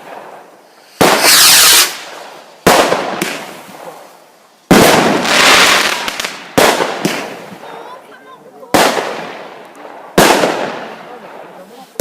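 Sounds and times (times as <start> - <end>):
fireworks blasts: 0.0 - 12.0.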